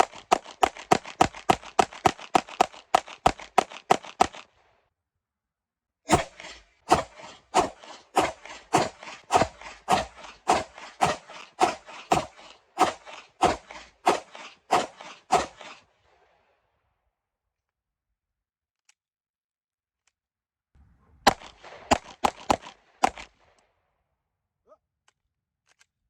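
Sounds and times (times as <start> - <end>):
pistol shots with echo: 6.1 - 15.8, 21.2 - 23.3.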